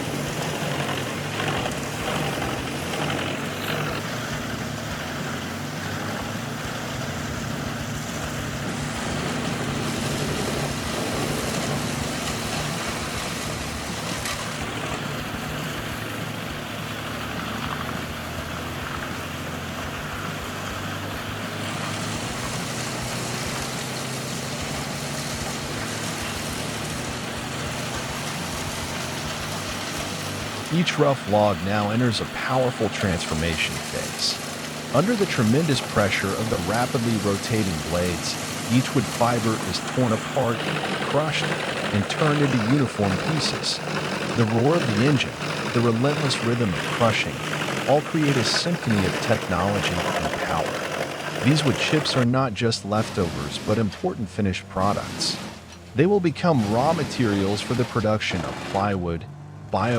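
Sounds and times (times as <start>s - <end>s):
wood chipper running: 0.0s - 59.9s.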